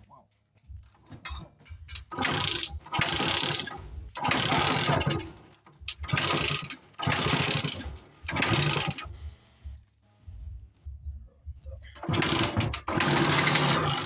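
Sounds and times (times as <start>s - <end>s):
low uneven engine pulsing: 9.1s - 12.0s
two-stroke engine bursts: 12.0s - 14.0s.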